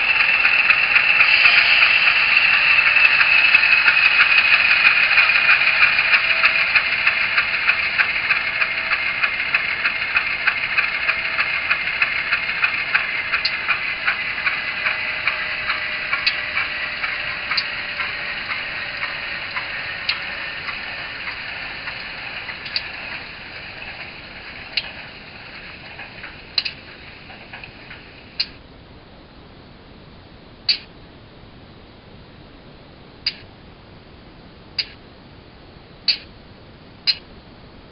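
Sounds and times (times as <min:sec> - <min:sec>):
model locomotive engine winding down: 0:00.0 - 0:28.6
sparse ticks: 0:00.0 - 0:28.6, 0:33.3 - 0:33.5, 0:34.8 - 0:35.0
faint whine dropping in pitch: 0:00.0 - 0:37.9.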